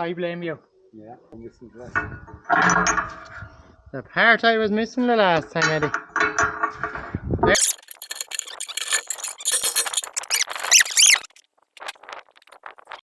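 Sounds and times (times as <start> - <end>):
metal parts squeaking and clicking: 7.5 - 13.0.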